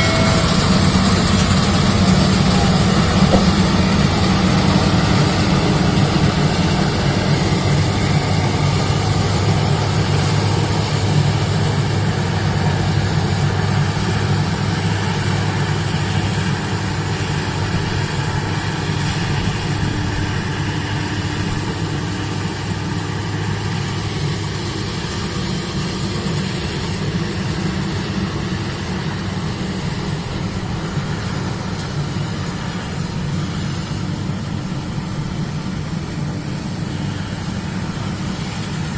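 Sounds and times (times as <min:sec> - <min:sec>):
combine harvester engine humming: 0:00.0 - 0:38.9.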